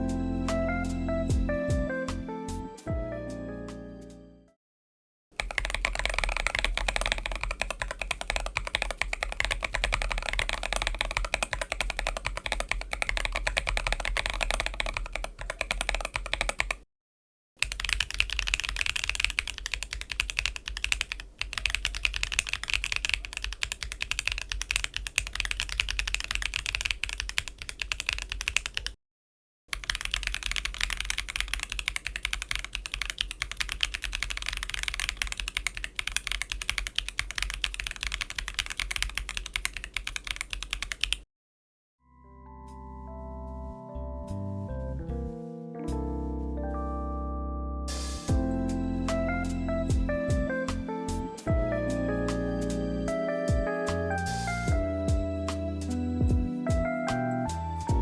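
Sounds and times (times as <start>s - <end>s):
mechanical keyboard typing: 5.4s - 16.8s, 17.6s - 29.0s, 29.7s - 41.2s.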